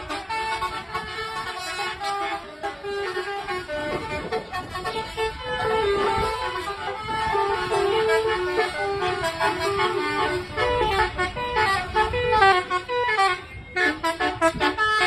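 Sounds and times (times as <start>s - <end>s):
bus musical horns tooting: 0.0s - 15.0s.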